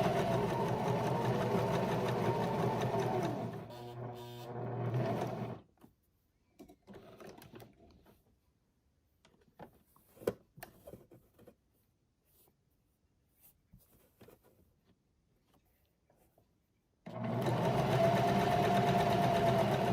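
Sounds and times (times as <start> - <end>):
electric sewing machine running: 0.0 - 5.6, 17.1 - 19.9.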